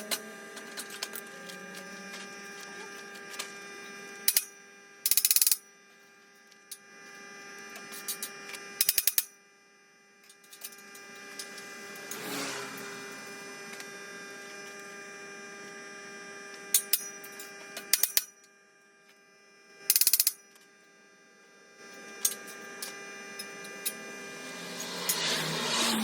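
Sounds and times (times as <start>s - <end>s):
welder transformer humming: 0.0s - 6.8s, 10.9s - 14.8s, 20.8s - 26.0s.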